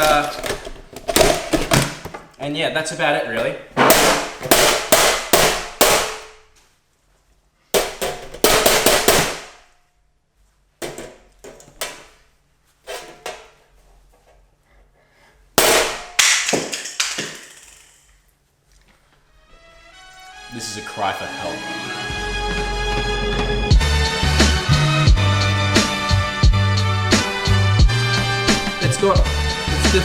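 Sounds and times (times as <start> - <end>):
hard objects banging and clanging: 0.0 - 2.4, 3.4 - 6.5, 7.8 - 9.6, 10.8 - 12.2, 12.8 - 13.6, 15.6 - 18.1.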